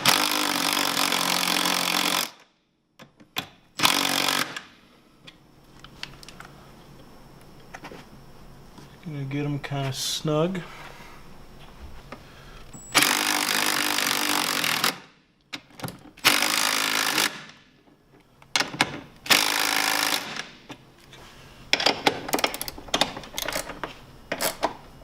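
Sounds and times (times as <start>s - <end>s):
impact driver running: 0.0s - 2.4s, 3.8s - 4.7s, 12.9s - 15.0s, 16.2s - 17.6s, 19.3s - 20.4s.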